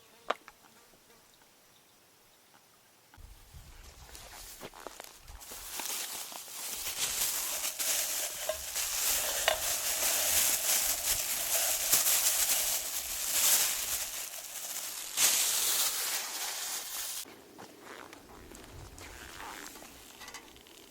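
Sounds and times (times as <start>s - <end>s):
wood fire crackling: 4.9s - 17.3s, 18.1s - 20.9s
food sizzling in a frying pan: 7.3s - 17.2s.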